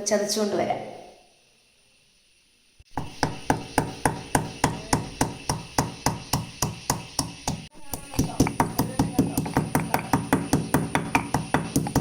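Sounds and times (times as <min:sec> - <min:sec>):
pounding spices with sharp knocks: 0:02.9 - 0:12.0.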